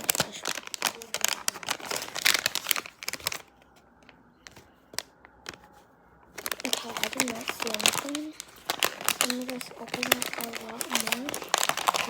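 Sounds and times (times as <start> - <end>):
plastic wrapper tearing: 0.0 - 3.8, 6.3 - 12.0.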